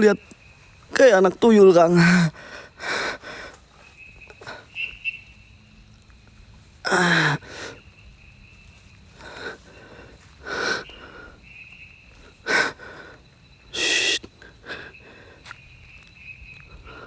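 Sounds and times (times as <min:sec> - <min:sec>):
man groaning: 0:06.9 - 0:07.4
man breathing hard and gasping: 0:09.2 - 0:11.4, 0:12.4 - 0:15.5.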